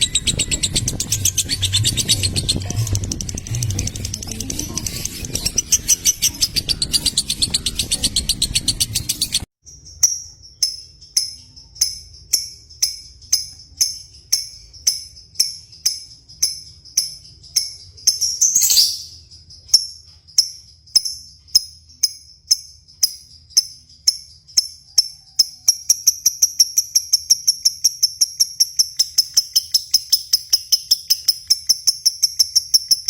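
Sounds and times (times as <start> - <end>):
lovebirds chirping: 0.0 - 20.9.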